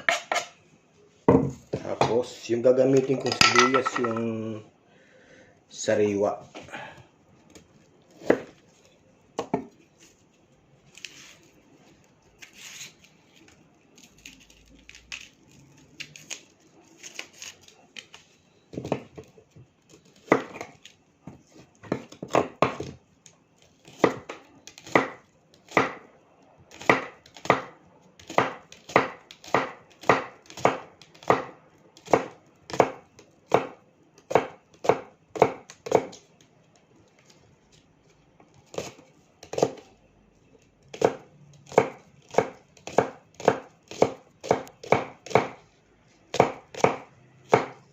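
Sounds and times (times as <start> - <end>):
knife chopping onion on board: 8.1 - 8.6, 9.4 - 9.8, 17.0 - 19.3, 20.0 - 23.0, 23.8 - 26.1, 26.7 - 36.3, 38.6 - 39.9, 40.8 - 45.6, 46.3 - 47.9.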